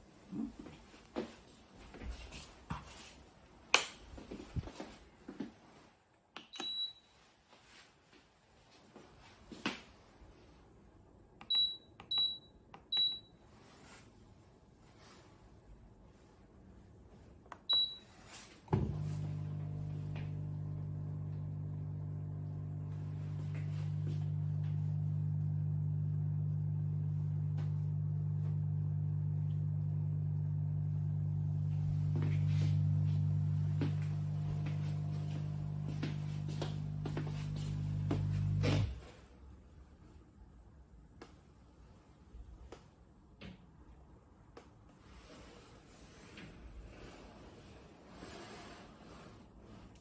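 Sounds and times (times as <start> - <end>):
dishwasher humming: 18.7 - 39.0.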